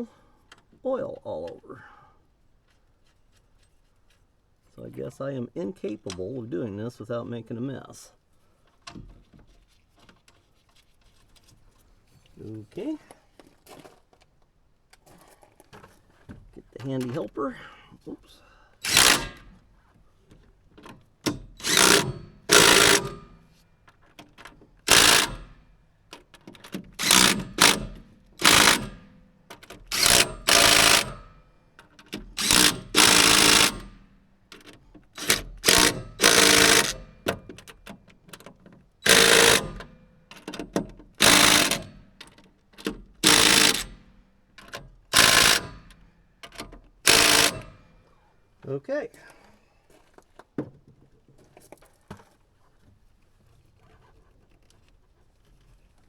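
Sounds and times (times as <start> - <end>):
cordless power tool bursts: 18.8 - 19.7, 21.3 - 23.5, 24.8 - 37.8, 39.0 - 44.3, 45.0 - 48.0.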